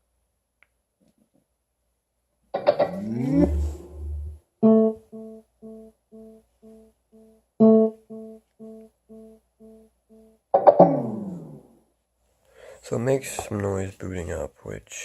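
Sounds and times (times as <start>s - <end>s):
strummed chord with bass thump: 3.4s - 5.8s.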